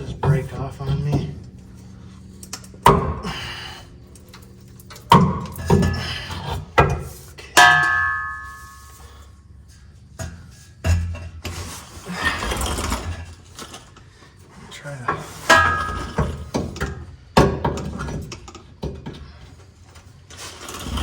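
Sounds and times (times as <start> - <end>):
metal exhaust pipe clanking: 0.0 - 14.2, 15.1 - 19.5
struck pipe ringing: 7.6 - 9.4, 15.5 - 16.5.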